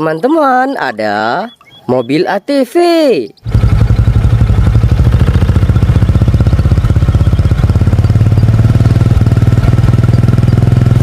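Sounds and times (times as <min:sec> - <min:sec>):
atv engine idling: 0:03.4 - 0:11.0.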